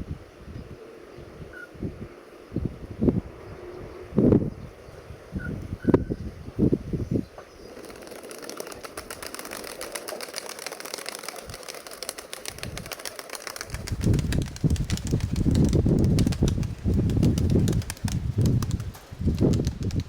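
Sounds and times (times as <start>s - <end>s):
wind buffeting microphone: 0.0s - 8.0s, 11.4s - 20.0s
pigeon wings flapping: 7.7s - 20.0s.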